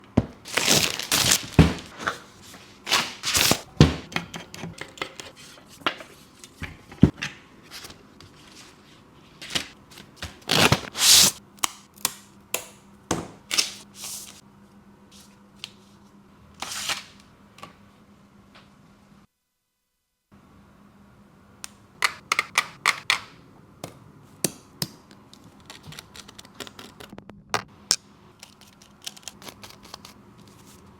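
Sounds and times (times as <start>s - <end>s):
packaging rustling: 0.4s - 3.7s, 25.4s - 27.4s, 28.4s - 30.8s.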